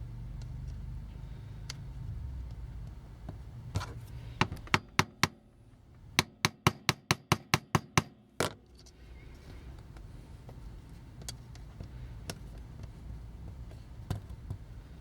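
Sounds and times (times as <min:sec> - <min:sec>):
hammer tapping on metal tool: 0:04.4 - 0:05.4, 0:06.2 - 0:08.6.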